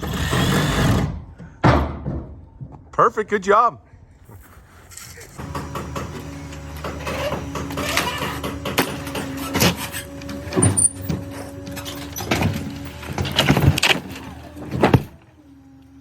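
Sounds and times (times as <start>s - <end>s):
heavy knocks and bangs: 0.4s - 2.8s
engine running: 5.4s - 16.0s.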